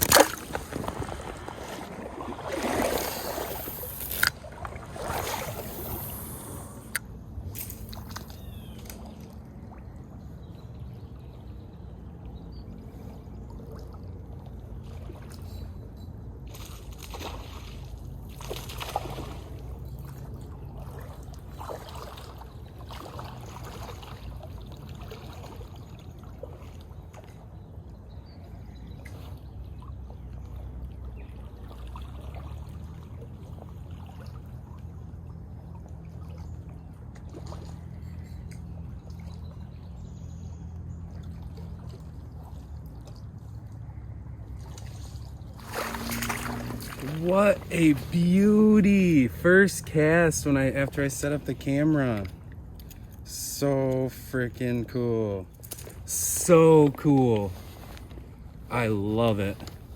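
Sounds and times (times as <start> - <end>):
water splashing: 0.0 - 7.0, 44.6 - 59.9
river water trickling: 0.0 - 59.9.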